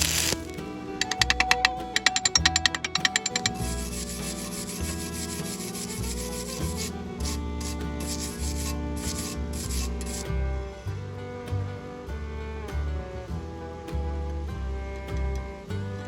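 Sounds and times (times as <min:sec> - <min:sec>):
welding arc crackling hiss: 0:00.0 - 0:00.6, 0:07.6 - 0:10.2
background music: 0:00.0 - 0:16.0.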